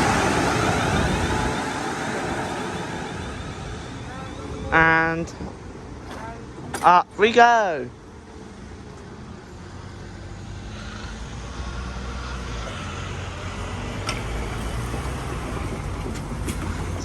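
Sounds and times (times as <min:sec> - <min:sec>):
vehicle engines: 0:00.0 - 0:17.0
tyre noise on road: 0:08.4 - 0:17.0.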